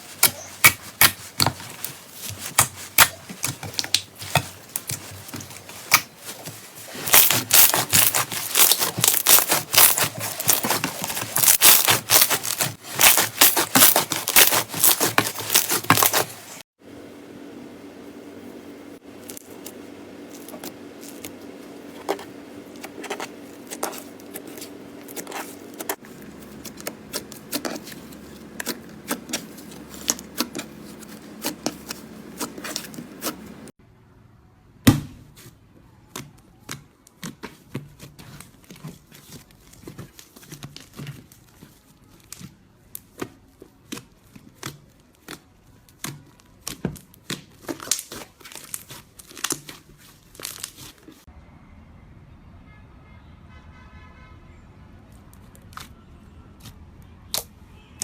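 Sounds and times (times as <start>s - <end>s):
slime crackling and popping: 2.2s - 16.3s, 43.8s - 50.9s.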